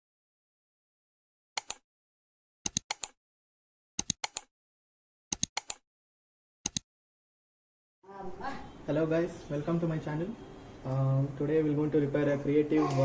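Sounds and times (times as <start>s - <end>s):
sharp clicks: 1.6s - 1.8s, 2.6s - 3.2s, 4.0s - 4.5s, 5.3s - 5.8s, 6.6s - 6.8s.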